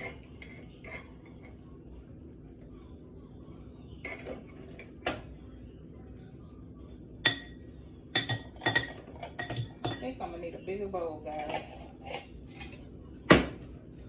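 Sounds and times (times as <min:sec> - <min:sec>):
utensil clinking against bowl: 0:07.3 - 0:07.6, 0:08.2 - 0:10.1.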